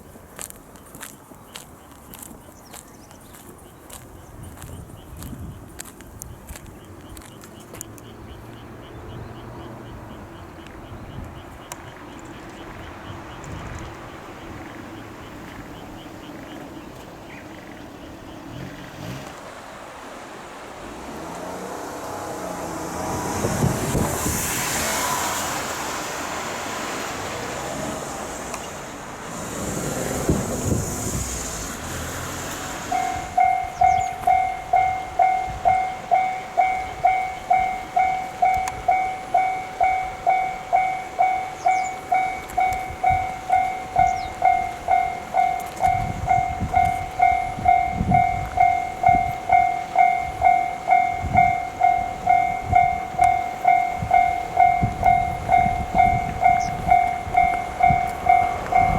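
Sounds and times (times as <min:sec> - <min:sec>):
broad rushing noise: 0:18.8 - 0:58.9
level crossing alarm dinging: 0:32.9 - 0:58.9.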